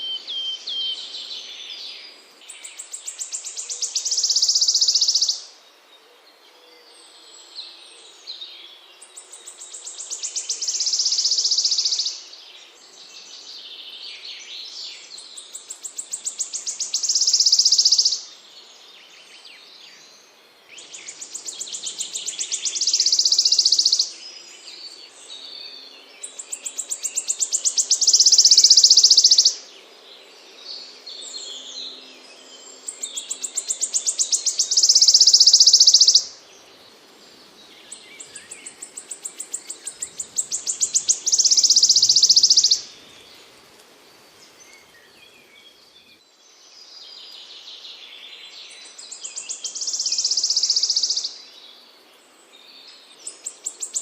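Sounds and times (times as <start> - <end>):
songbird buzzing trill song: 0.0 - 5.7, 7.4 - 54.0
soft bird twittering: 13.1 - 18.4, 20.8 - 29.7, 31.2 - 43.6, 44.4 - 51.6.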